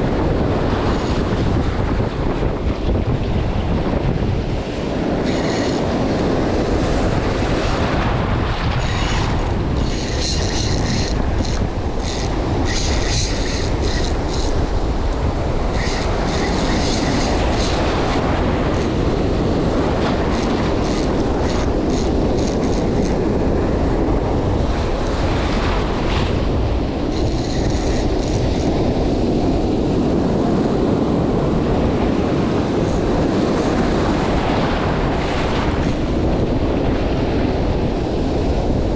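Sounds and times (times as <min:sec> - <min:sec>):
breaking surf: 0:00.0 - 0:38.9
wind buffeting microphone: 0:00.0 - 0:38.9
mechanical whirring: 0:05.2 - 0:06.1, 0:08.6 - 0:18.9, 0:20.2 - 0:23.2, 0:27.1 - 0:28.7.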